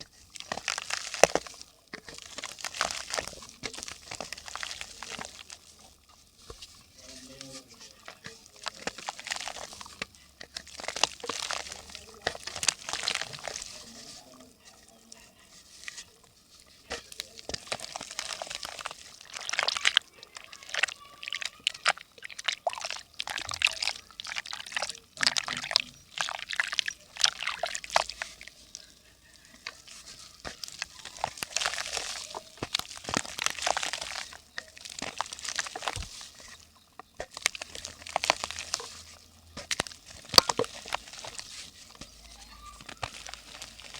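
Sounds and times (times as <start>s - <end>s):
mud crackling as water soaks in: 0.0s - 43.9s.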